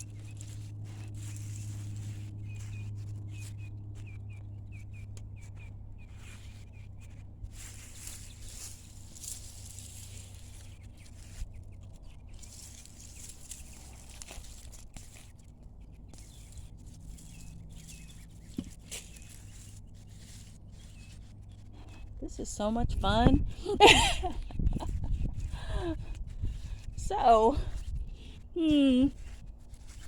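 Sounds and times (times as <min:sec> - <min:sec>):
small bird chirping: 0:00.0 - 0:22.4
soft knocks and rustles: 0:16.2 - 0:19.9.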